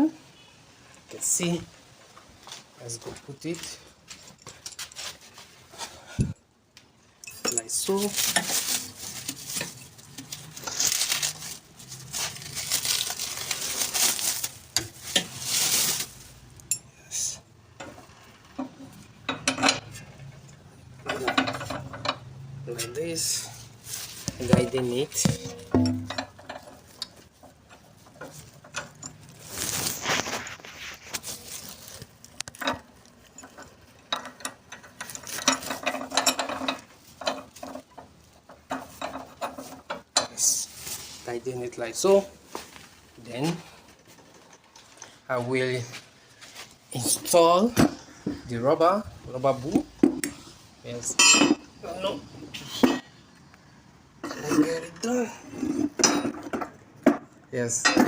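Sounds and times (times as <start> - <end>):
rustling and scraping: 0.9 - 6.4, 7.3 - 16.8, 17.8 - 53.2, 54.2 - 58.0.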